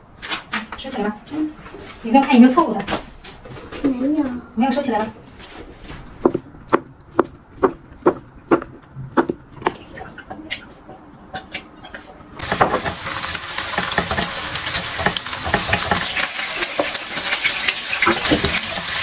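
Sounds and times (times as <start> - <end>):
knife chopping on cutting board: 6.2 - 9.8
spatula scraping pan: 11.8 - 19.0
food sizzling in hot pan: 12.4 - 19.0.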